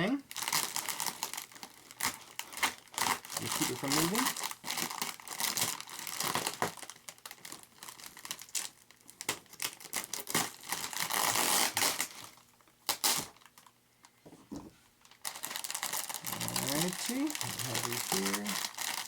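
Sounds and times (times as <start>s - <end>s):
packing wrap crinkling: 0.3s - 14.2s, 15.0s - 19.0s
tape tearing: 9.2s - 13.6s, 15.3s - 19.0s.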